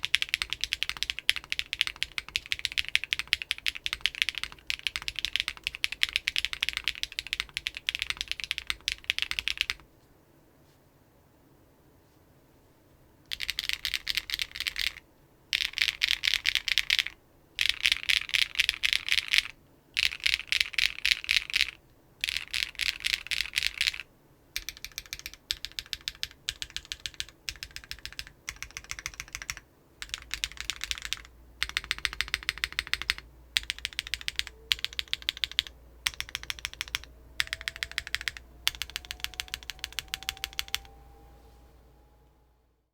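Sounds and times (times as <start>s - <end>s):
keyboard typing clacks: 0.0s - 9.8s, 13.3s - 15.0s, 15.6s - 24.0s, 24.6s - 40.9s.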